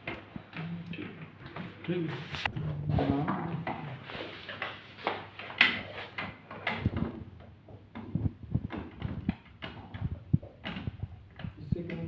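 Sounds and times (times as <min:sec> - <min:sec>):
clicks and knocks on a chair: 0:03.1 - 0:12.0.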